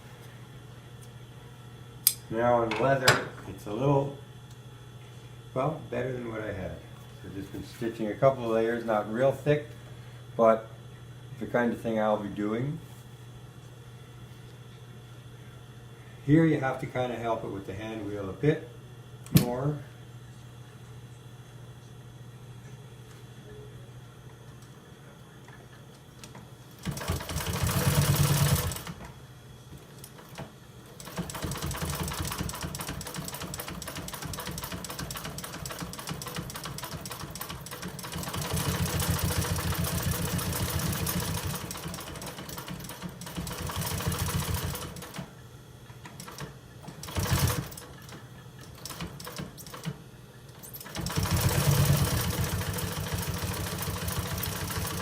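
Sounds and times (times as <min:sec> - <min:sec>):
industrial sewing machine stitching: 0:26.8 - 0:29.0, 0:31.0 - 0:45.3, 0:46.2 - 0:50.0, 0:50.6 - 0:55.0.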